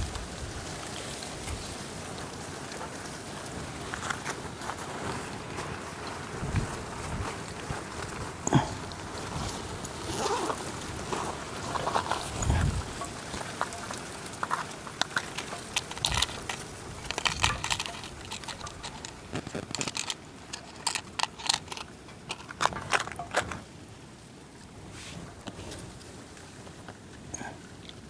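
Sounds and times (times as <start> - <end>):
short crackly bursts: 0.1 - 23.7
handling clicks and knocks: 6.6 - 23.7.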